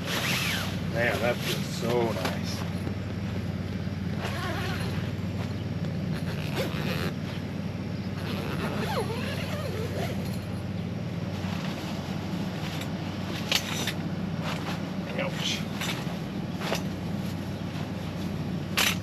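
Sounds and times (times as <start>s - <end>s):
air conditioner humming: 0.0s - 19.0s
gear rustling and clicking: 11.3s - 19.0s.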